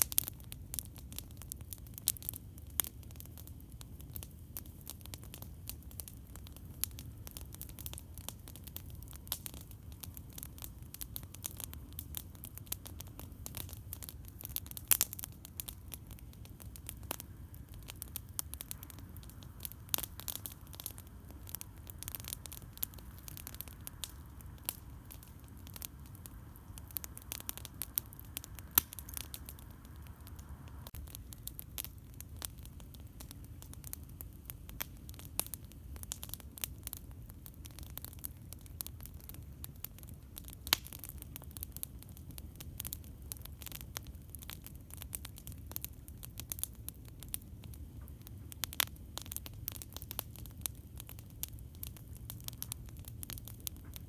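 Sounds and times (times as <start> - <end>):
campfire crackling and popping: 0.0 - 54.0
steady low rumble: 16.1 - 31.4.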